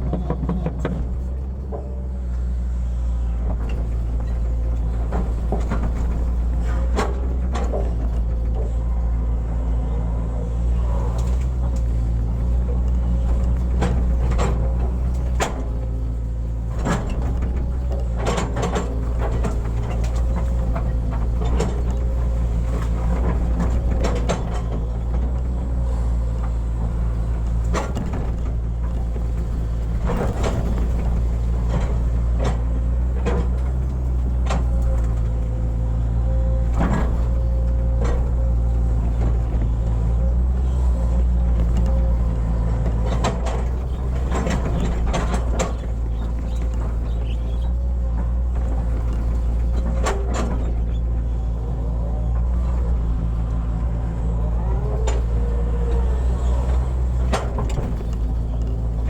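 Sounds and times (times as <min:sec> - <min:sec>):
excavator diesel engine running: 0:00.0 - 0:59.0.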